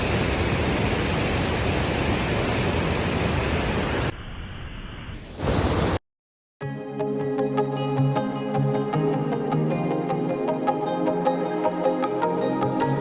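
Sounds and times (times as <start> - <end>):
waterfall rushing: 5.4 - 6.0.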